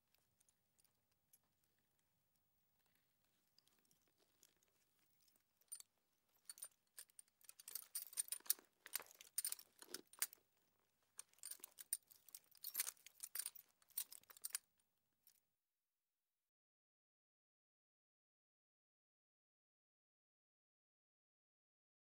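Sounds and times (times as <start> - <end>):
bridle fittings jingling: 6.4 - 10.3, 11.2 - 14.6.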